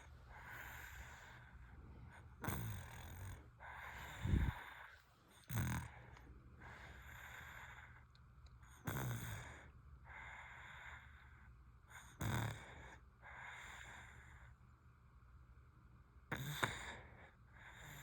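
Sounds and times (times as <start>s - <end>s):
soft breathing: 0.0s - 8.2s
baby snoring snorts: 0.4s - 1.5s, 2.4s - 6.1s, 8.8s - 9.7s, 12.0s - 14.0s, 16.3s - 18.0s.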